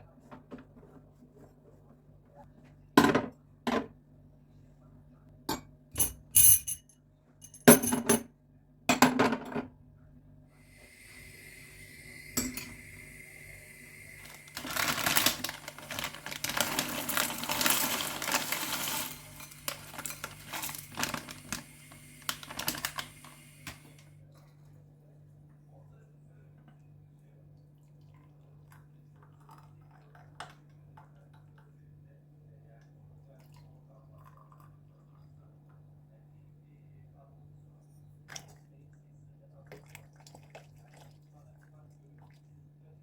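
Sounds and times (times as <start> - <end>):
dishes and cutlery clinking: 5.5 - 8.3
running water hiss: 10.6 - 16.2, 18.6 - 24.0.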